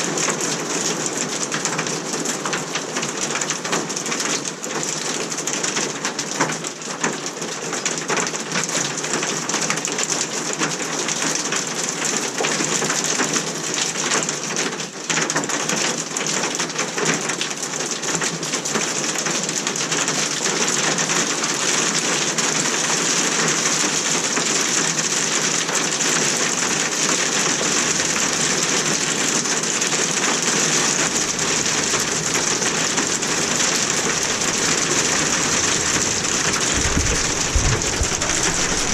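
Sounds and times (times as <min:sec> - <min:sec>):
hail and rain pelting down: 0:00.0 - 0:38.9.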